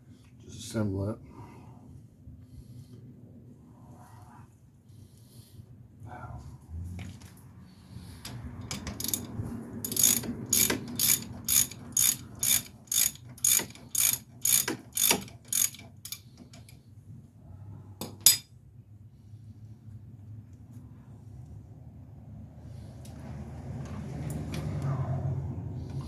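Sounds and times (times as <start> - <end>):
ratchet wrench pawl clicking: 8.2 - 16.7.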